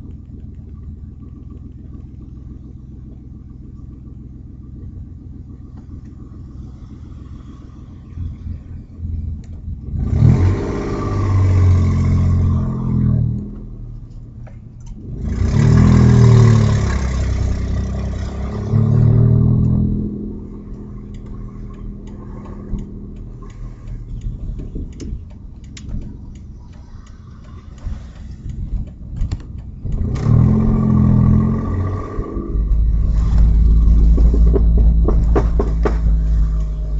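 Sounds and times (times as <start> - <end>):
car engine revving and idling: 0.0 - 36.9
sharp clicks: 20.6 - 30.6.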